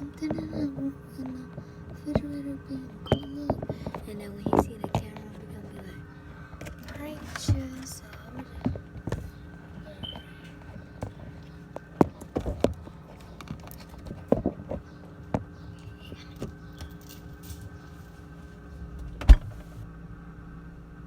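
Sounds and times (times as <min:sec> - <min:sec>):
steady low hum: 0:00.0 - 0:21.0
loud thump: 0:19.2 - 0:19.6.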